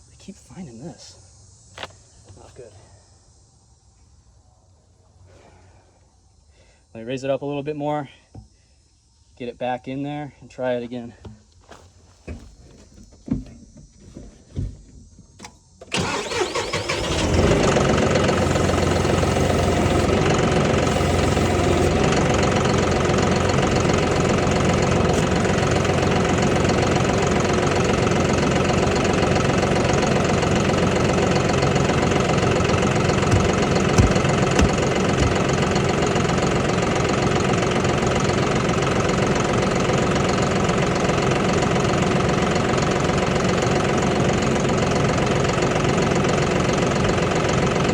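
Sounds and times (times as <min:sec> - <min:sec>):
engine cranking and idling: 0:15.8 - 0:47.9.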